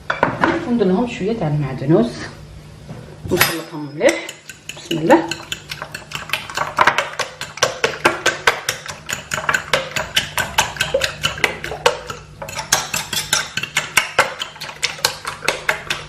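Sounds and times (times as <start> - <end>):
utensil beating eggs in a bowl: 4.0 - 16.0.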